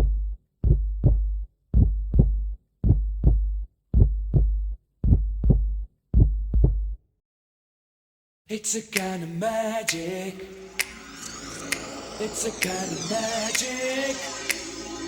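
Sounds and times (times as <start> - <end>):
heartbeat-like double thumps: 0.0 - 7.0.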